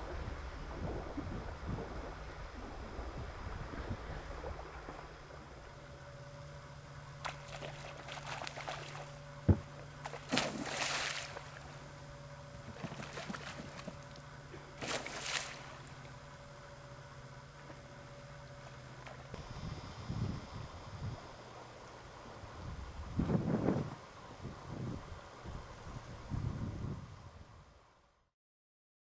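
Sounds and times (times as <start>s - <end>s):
faint steady hum: 0.0s - 28.3s
paddle splashing in water: 7.2s - 11.8s, 12.6s - 16.2s.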